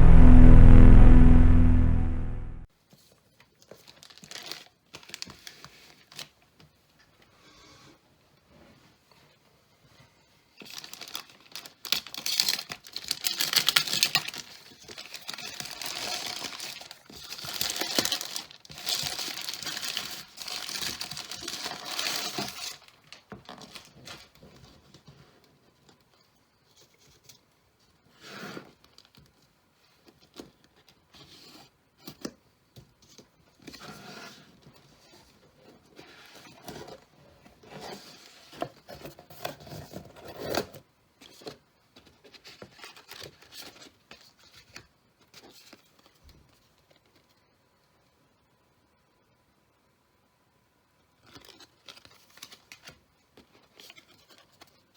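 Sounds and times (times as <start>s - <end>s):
wrapping crinkling: 3.7s - 6.3s, 10.6s - 24.4s.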